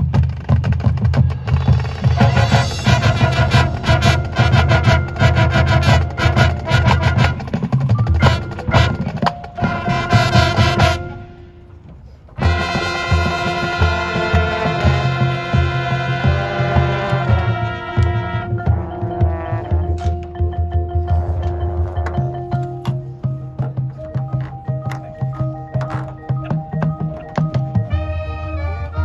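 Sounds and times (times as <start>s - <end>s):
drums and percussion: 0.0s - 29.0s
marching band playing: 0.0s - 29.0s
brass chords: 2.0s - 20.2s.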